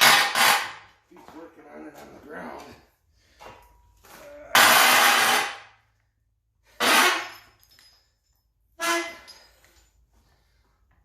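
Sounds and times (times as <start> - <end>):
compressed-air tool bursts: 0.0 - 0.8, 4.6 - 5.6.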